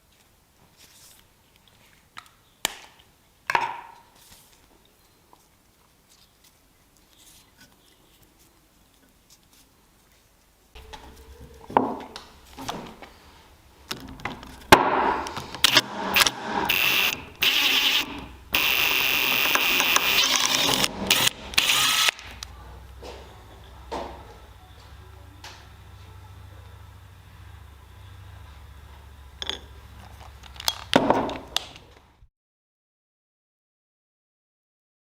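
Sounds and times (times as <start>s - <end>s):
workpieces knocking: 10.8s - 13.2s, 13.8s - 17.2s
power tool bursts: 14.8s - 22.4s.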